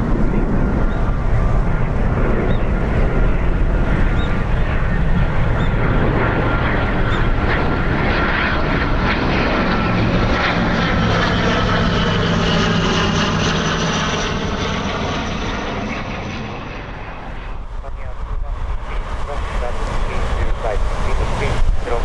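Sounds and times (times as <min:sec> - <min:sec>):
wind on microphone: 0:00.0 - 0:11.3, 0:16.7 - 0:22.0
airliner engine noise: 0:00.0 - 0:22.0.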